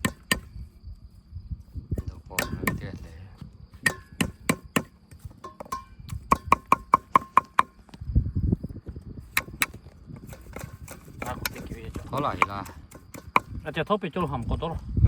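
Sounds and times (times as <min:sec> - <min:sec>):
sharp knocks or chops: 0:02.0 - 0:03.0.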